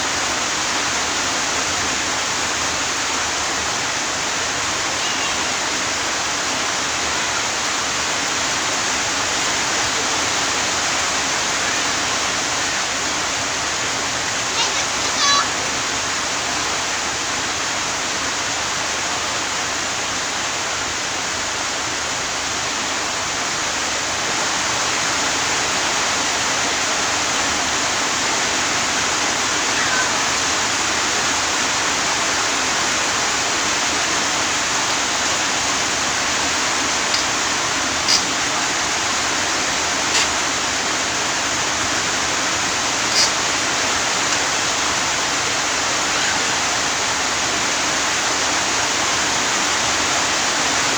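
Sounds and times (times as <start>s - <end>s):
rushing hiss: 21.5s - 50.9s
faint clicks: 36.9s - 37.4s, 38.0s - 38.4s, 43.1s - 43.5s.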